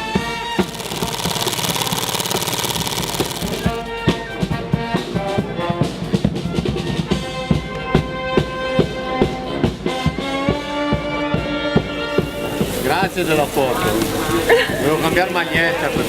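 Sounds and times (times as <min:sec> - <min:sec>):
steady drum beat: 0:00.4 - 0:09.9.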